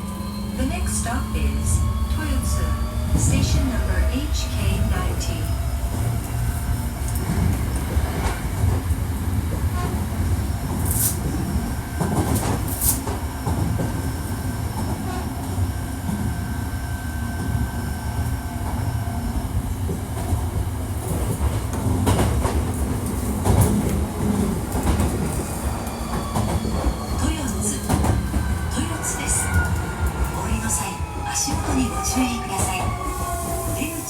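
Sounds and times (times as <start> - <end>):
train wheels rumbling on track: 0.0 - 34.0.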